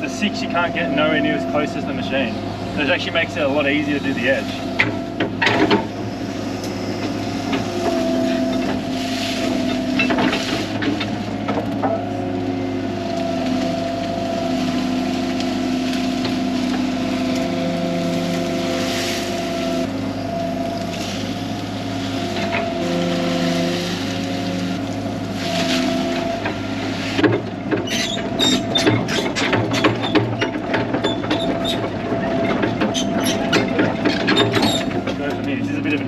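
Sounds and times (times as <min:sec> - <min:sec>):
excavator diesel engine: 0:00.0 - 0:36.0.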